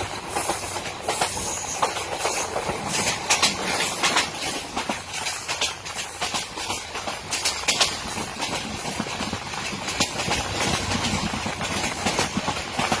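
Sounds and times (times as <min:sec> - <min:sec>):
train rumble and hiss: 0:00.0 - 0:13.0.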